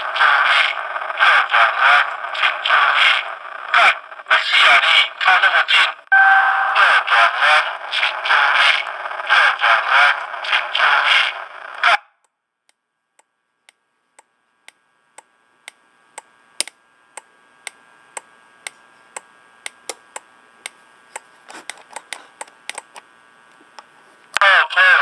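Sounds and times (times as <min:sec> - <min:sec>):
faint steady hum: 0:12.6 - 0:25.0
extra clicks: 0:13.7 - 0:24.4
turn signal flasher ticking: 0:14.7 - 0:21.3.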